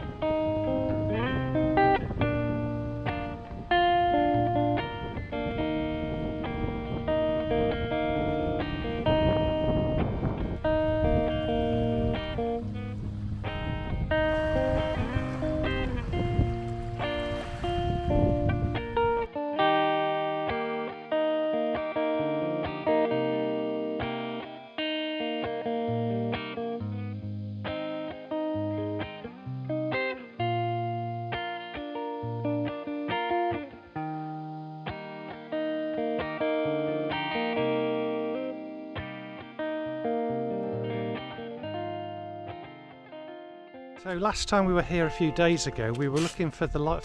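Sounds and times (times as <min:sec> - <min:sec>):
plucked guitar melody: 0:00.0 - 0:47.0.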